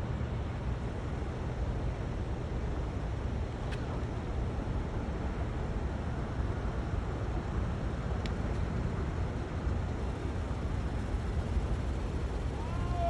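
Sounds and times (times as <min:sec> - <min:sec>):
car and road noise rumble: 0:00.0 - 0:13.0
faint short click: 0:03.6 - 0:03.9.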